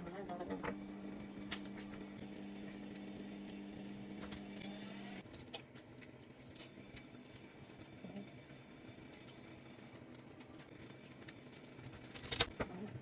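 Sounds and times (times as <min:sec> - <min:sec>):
low electrical motor hum: 0:00.0 - 0:13.0.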